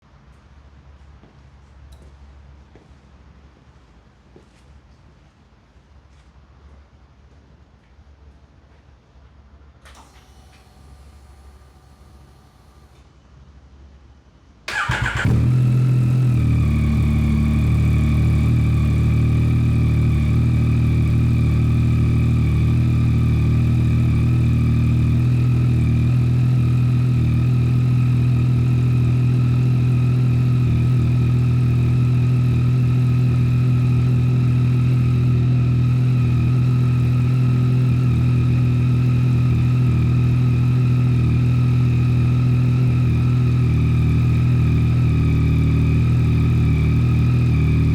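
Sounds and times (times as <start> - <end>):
motorcycle engine starting and idling: 9.9 - 13.0, 14.7 - 47.9.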